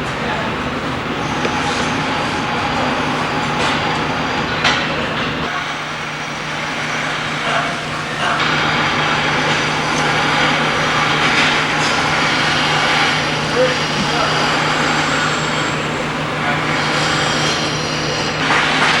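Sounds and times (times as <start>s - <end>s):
loud machine noise: 0.0s - 19.0s.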